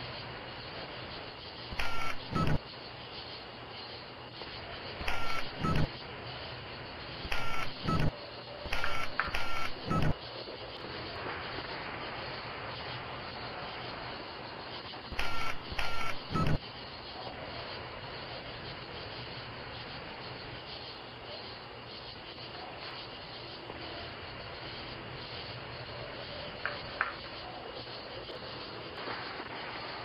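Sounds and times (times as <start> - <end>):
outdoor background hiss: 0.0 - 30.0
loud electronic bursts: 1.7 - 2.6, 5.0 - 5.9, 11.0 - 16.6.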